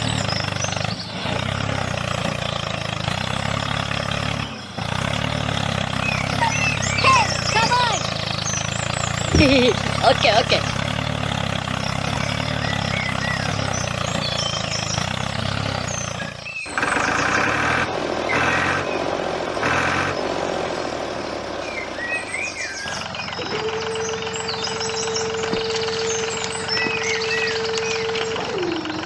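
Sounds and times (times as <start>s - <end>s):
birds chirping: 0.0s - 29.0s
pulsing motor sound: 0.0s - 29.0s
small motor hum: 0.0s - 29.0s
high motor whine: 16.2s - 29.0s.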